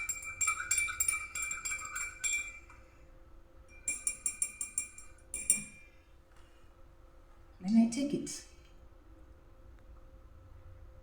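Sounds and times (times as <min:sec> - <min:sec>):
metal utensil clinking on glass: 0:00.0 - 0:02.7, 0:03.7 - 0:05.9.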